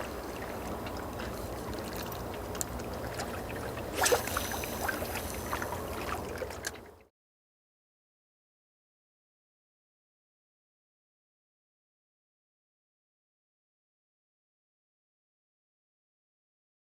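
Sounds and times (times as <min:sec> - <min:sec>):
water lapping and splashing: 0:00.0 - 0:07.1.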